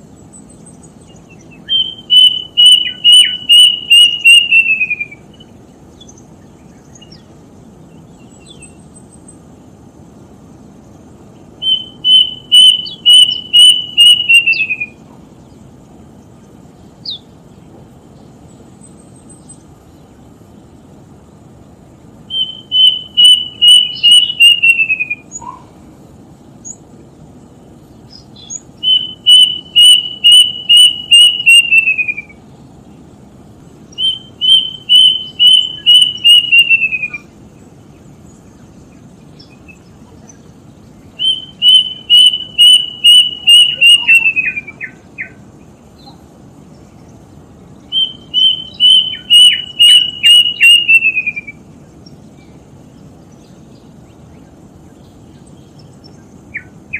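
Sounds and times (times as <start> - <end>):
bird whistling calls: 0.2 - 7.3, 7.9 - 9.2, 11.4 - 15.2, 17.0 - 17.3, 22.3 - 25.7, 28.1 - 32.5, 33.9 - 37.3, 38.9 - 45.4, 47.8 - 51.7, 53.4 - 56.9.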